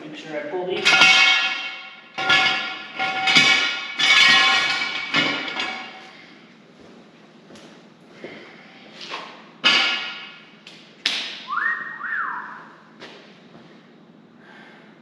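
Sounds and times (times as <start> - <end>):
metal parts clanking: 0.8 - 6.1.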